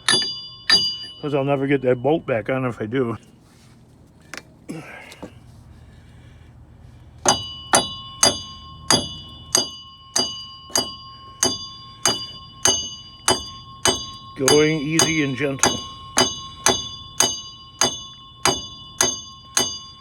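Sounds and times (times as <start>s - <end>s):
hammer striking steel bolt: 0.0s - 1.2s, 7.3s - 19.8s.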